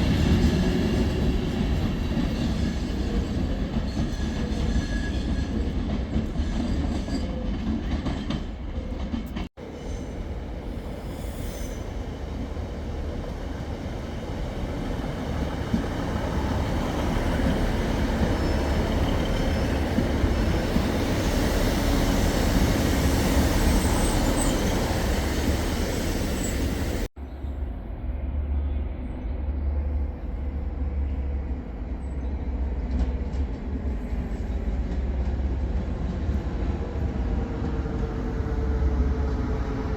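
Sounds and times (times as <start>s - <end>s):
train rumbling: 0.0s - 39.9s
high wheel squeal: 20.9s - 27.1s.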